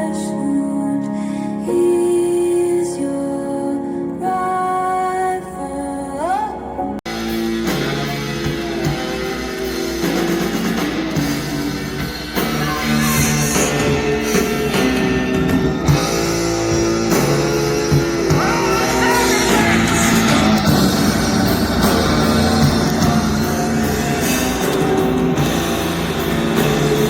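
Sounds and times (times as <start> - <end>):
rock music with guitar and drums: 7.1 - 27.0
person singing: 12.4 - 14.9, 18.0 - 25.9.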